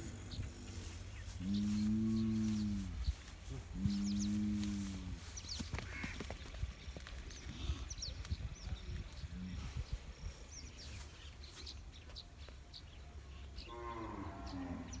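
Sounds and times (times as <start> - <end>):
low steady rumble: 0.0 - 5.6
small birds chirping: 0.0 - 15.0.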